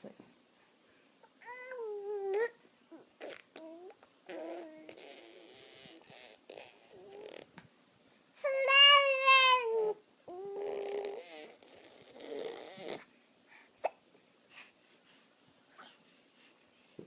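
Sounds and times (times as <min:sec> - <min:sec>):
baby cooing: 0:01.4 - 0:07.5, 0:08.4 - 0:13.1
baby breathy sound: 0:12.8 - 0:17.0.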